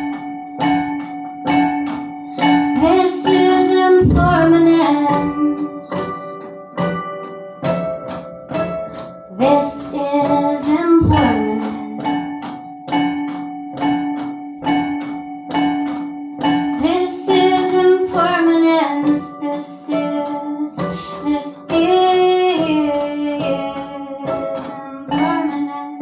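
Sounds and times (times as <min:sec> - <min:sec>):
plucked string instrument: 0:00.0 - 0:26.0
woman singing wordless notes: 0:02.3 - 0:06.7, 0:09.3 - 0:13.0, 0:16.7 - 0:26.0.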